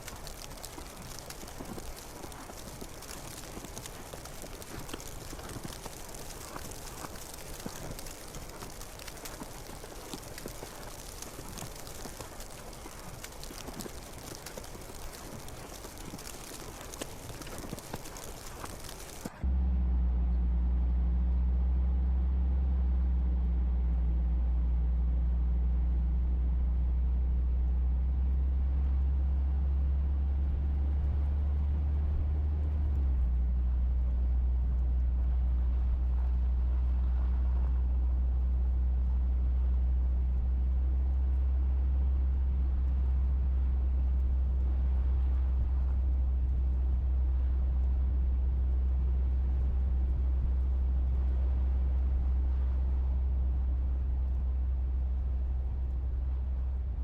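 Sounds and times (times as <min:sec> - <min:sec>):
low-pitched drone: 0:19.4 - 0:36.9.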